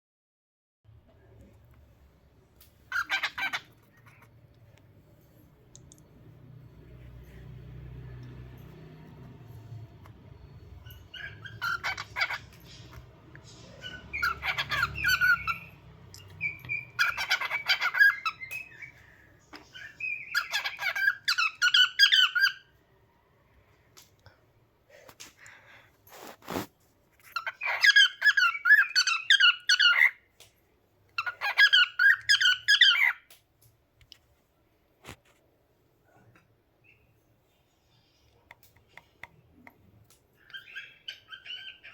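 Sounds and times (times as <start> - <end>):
cockatiel chirping and squawking: 2.9 - 4.3, 10.5 - 22.7, 27.2 - 30.2, 31.2 - 33.3, 40.4 - 41.9.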